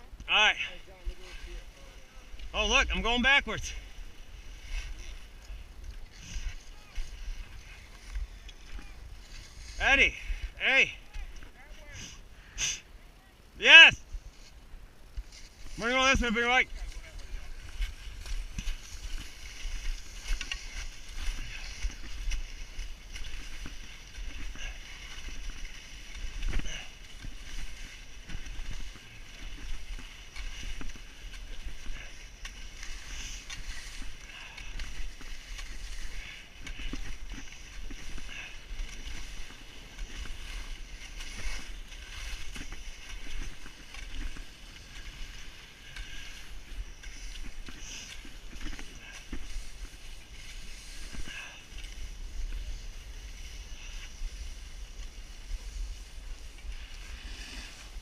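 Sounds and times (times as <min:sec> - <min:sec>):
skis scraping over snow: 0:00.0 - 0:12.8, 0:13.6 - 0:58.0
wind rumbling on microphone: 0:13.4 - 0:58.0.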